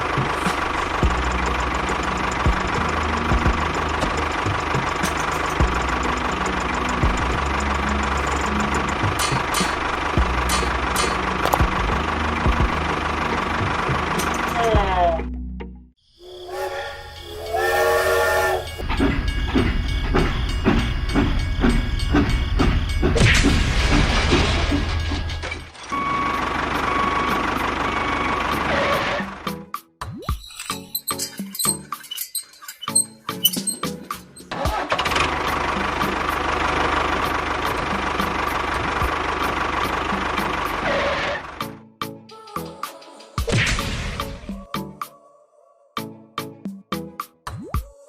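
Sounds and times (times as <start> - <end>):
mechanical chugging with knocks: 0.0 - 14.6, 18.7 - 25.8
small engine running: 0.0 - 15.0, 34.6 - 41.7
whistle blasts: 16.4 - 18.8.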